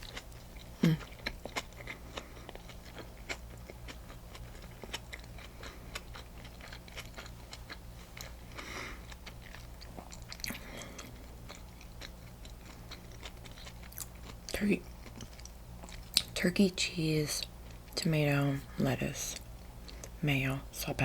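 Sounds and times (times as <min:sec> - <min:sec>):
chewing sandwich crunches: 0:00.0 - 0:16.4
low electrical hum: 0:00.0 - 0:21.0.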